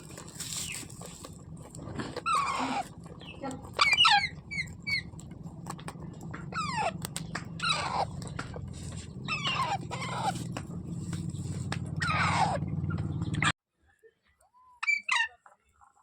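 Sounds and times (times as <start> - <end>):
low hum: 0.0 - 13.5
parrot calls: 2.2 - 5.2, 6.3 - 13.5
sharp clicks: 4.7 - 9.2.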